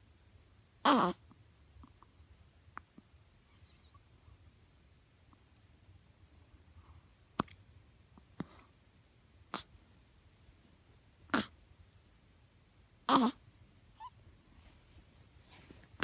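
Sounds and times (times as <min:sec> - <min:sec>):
hiccups: 0:00.8 - 0:01.2, 0:09.5 - 0:09.7, 0:11.3 - 0:11.6, 0:13.1 - 0:13.4.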